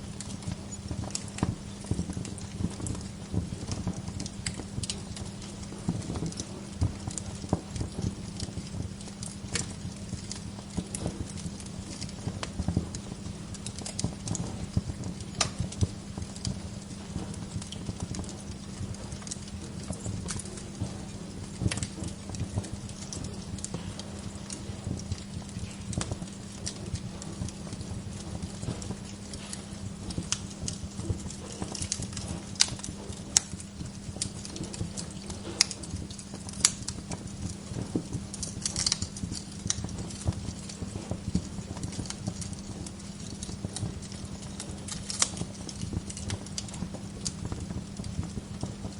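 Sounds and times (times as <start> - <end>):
fire pops: 0.0 - 48.9
low fire rumble: 0.0 - 48.9
wood fire crackling: 0.0 - 48.9.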